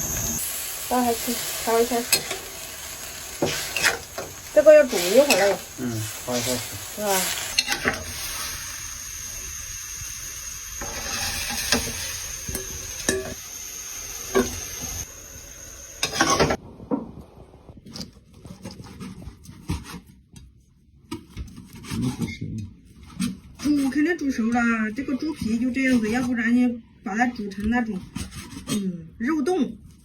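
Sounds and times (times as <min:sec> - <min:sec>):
pot hissing on stove: 0:00.0 - 0:17.7.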